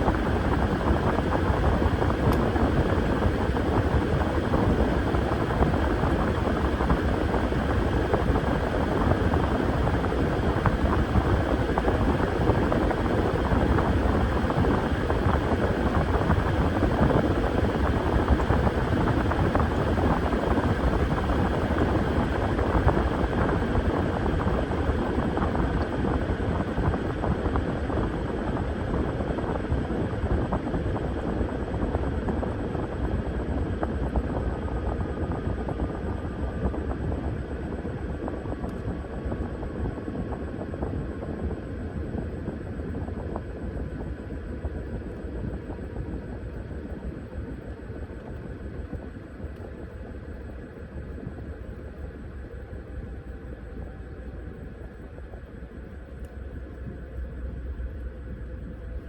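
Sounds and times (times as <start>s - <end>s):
washing machine churning: 0.0s - 41.0s.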